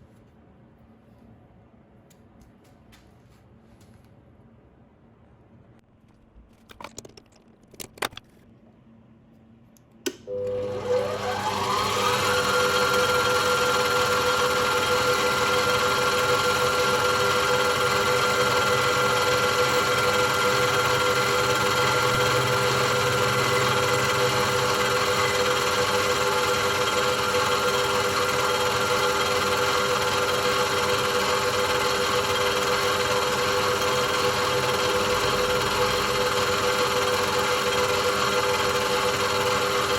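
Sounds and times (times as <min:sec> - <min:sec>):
clicks: 0:09.7 - 0:10.3.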